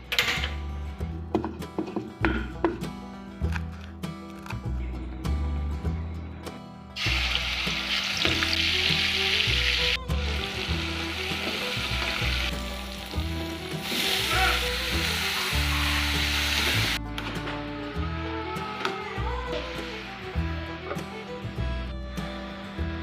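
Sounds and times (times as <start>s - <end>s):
food sizzling in hot oil: 7.0s - 17.0s.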